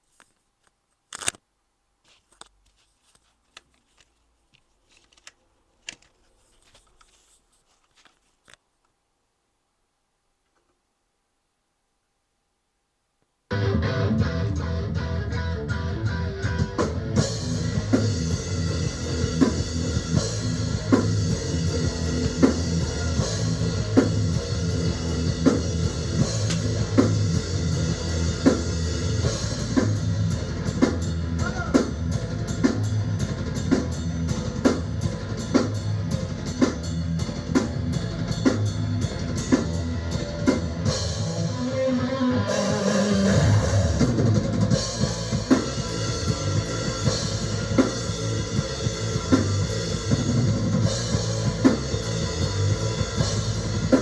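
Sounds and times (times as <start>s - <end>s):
bass guitar: 13.5s - 54.0s
drum kit beat: 13.5s - 54.0s
electric guitar: 13.5s - 54.0s.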